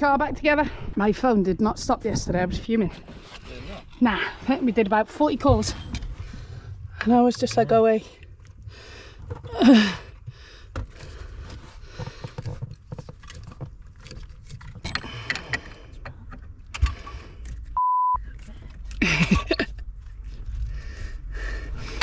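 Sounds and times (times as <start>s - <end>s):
short steady beep: 17.8s - 18.2s.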